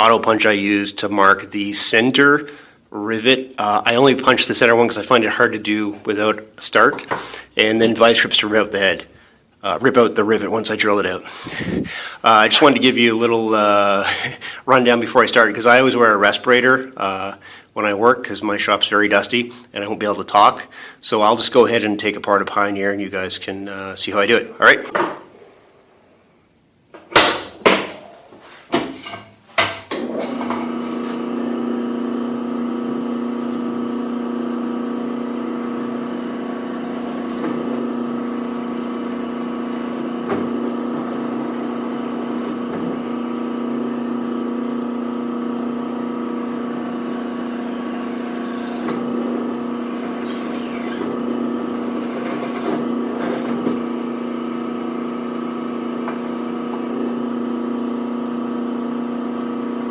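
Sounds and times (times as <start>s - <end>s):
drill press motor humming: 29.9s - 59.9s.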